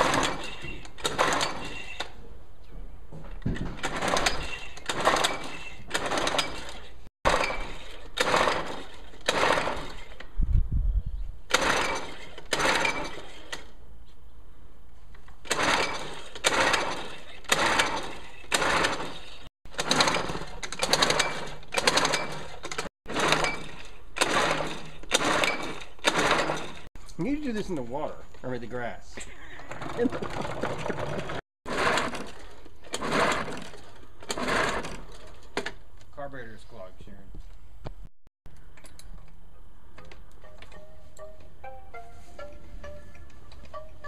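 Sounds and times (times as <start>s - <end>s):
pull-cord starter rasping: 0.0s - 2.2s, 3.5s - 10.4s, 11.5s - 13.8s, 15.2s - 26.9s, 29.6s - 35.8s.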